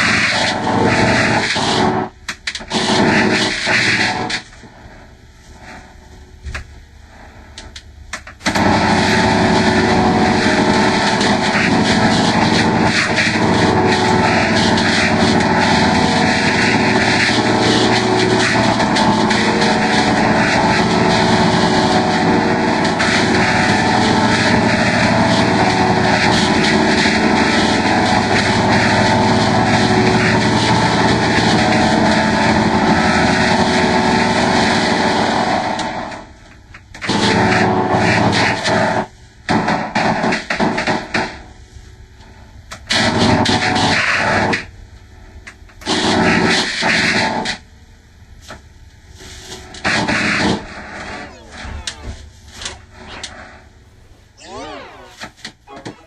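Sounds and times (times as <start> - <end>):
distorted toy voices and music: 7.4 - 36.2, 49.8 - 56.0.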